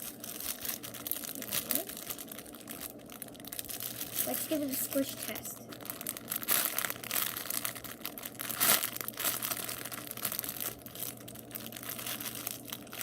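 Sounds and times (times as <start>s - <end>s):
foam toy crinkling and rustling: 0.0s - 13.0s.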